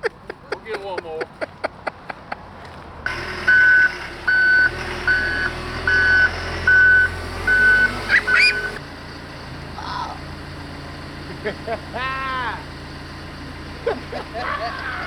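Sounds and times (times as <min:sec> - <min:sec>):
engine low rumble: 0:00.0 - 0:15.0
backup alarm beeping: 0:03.1 - 0:08.8.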